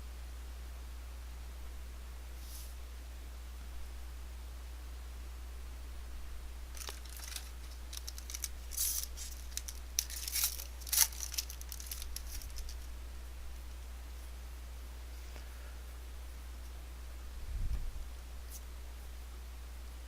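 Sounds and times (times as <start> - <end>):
wrapper tearing and crinkling: 6.7 - 12.9.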